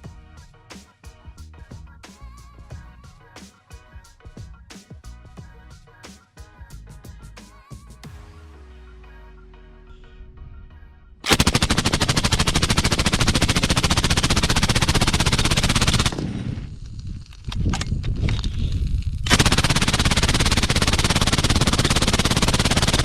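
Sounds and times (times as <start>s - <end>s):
faint background music: 0.0s - 11.3s
suppressed machine gun full-auto fire: 11.2s - 16.7s, 19.3s - 23.0s.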